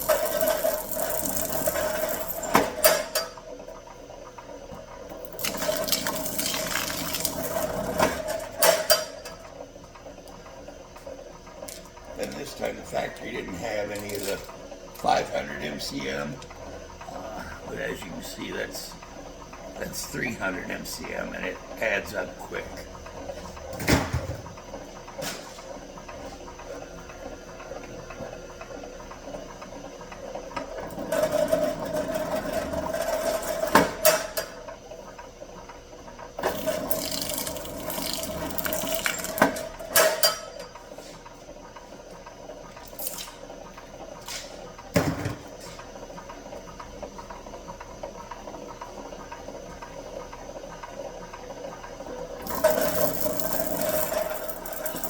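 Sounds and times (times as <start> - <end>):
wire-stripping machine running: 0.0 - 3.5, 5.1 - 9.6, 30.0 - 34.6, 36.4 - 40.7, 52.3 - 55.0.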